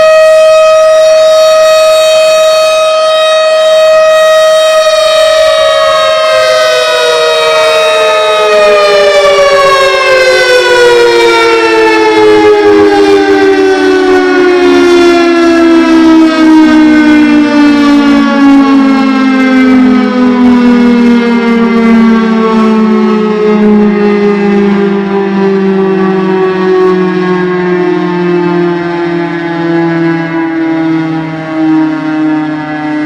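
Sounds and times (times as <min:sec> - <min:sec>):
outdoor warning sirens wailing: 0:00.0 - 0:33.0.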